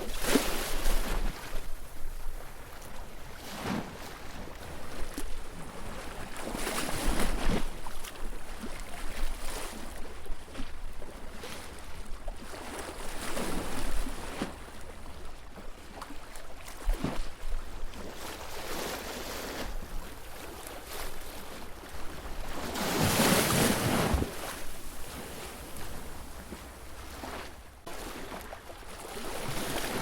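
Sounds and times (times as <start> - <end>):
sea waves washing in: 18.4 - 30.0.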